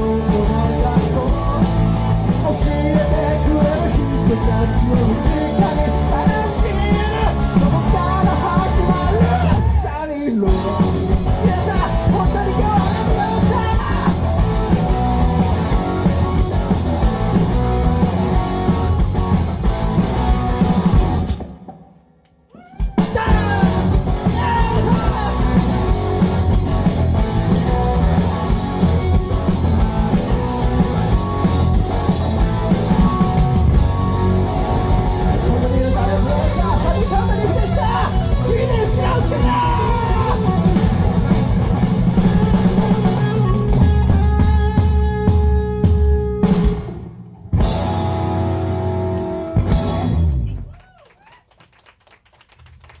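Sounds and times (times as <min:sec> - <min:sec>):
rock band playing live: 0:00.0 - 0:50.8
people cheering: 0:09.0 - 0:10.1, 0:22.5 - 0:25.3, 0:36.0 - 0:40.6, 0:50.3 - 0:53.0
people clapping: 0:50.3 - 0:53.0.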